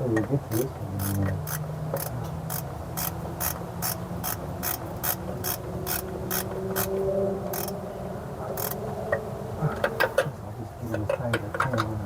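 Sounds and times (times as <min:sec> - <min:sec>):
ratchet pawl clicking: 0:00.5 - 0:06.9, 0:07.5 - 0:07.8, 0:08.6 - 0:08.8.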